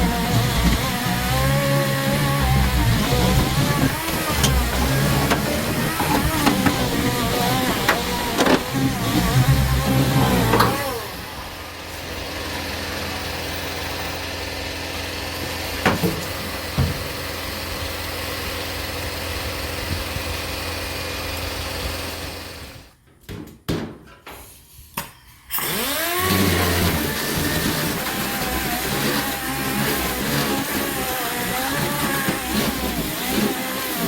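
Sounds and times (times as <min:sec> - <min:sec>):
sander running: 0:00.0 - 0:22.7, 0:25.6 - 0:34.0.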